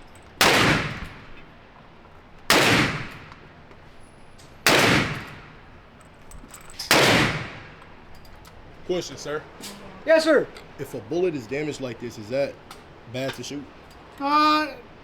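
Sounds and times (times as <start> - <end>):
gunshots with echo: 0.4 - 1.5, 2.5 - 3.6, 4.6 - 5.8, 6.9 - 8.0.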